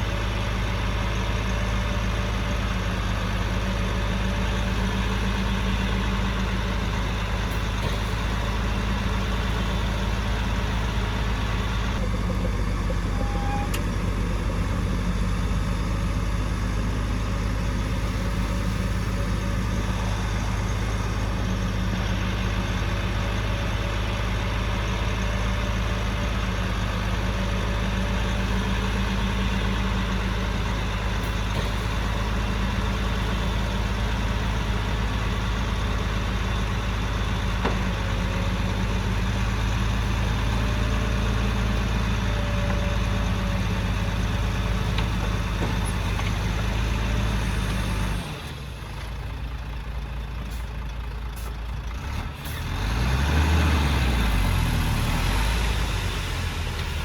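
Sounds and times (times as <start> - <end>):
heavy diesel engine droning: 0.0 - 57.0.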